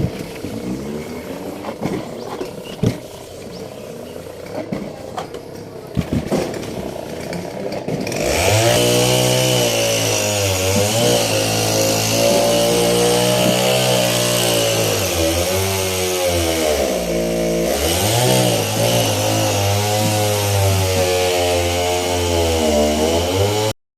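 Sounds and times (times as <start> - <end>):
small engine revving high: 8.0 - 23.8.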